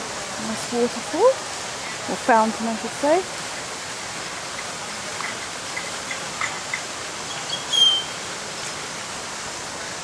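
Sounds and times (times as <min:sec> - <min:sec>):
fountain water rushing: 0:00.0 - 0:10.0
bird chirping: 0:07.3 - 0:08.2.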